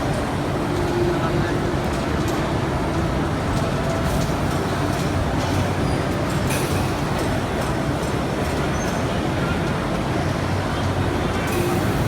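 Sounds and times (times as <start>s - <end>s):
factory machinery running: 10.9s - 12.0s.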